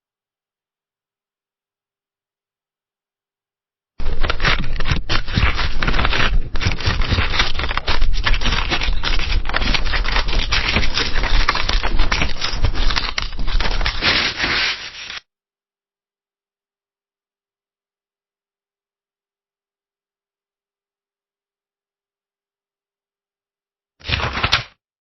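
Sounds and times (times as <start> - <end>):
book pages turning: 4.0 - 15.2, 24.0 - 24.7.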